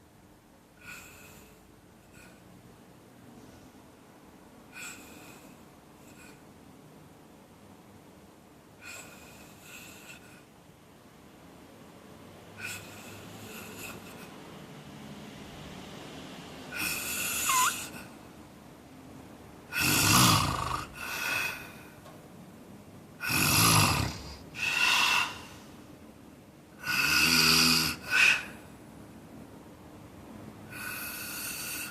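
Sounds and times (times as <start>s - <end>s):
man snoring: 12.6s - 14.3s, 16.7s - 18.1s, 19.7s - 21.8s, 23.2s - 25.6s, 26.8s - 28.6s, 30.7s - 31.9s.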